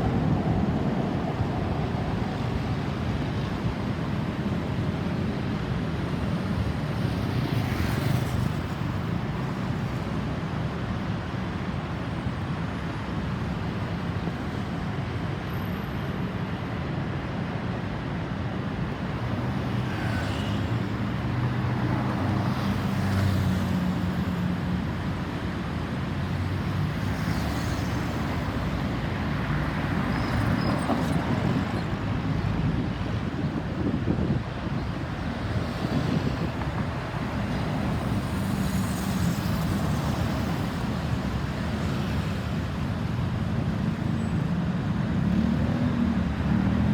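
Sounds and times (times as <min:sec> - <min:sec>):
road traffic passing: 0:16.7 - 0:46.9.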